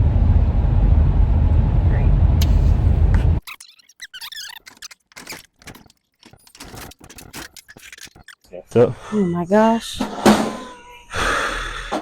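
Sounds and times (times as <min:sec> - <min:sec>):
vehicle road noise: 0:00.0 - 0:03.4
vending machine caster wheels squeaking: 0:03.4 - 0:08.4.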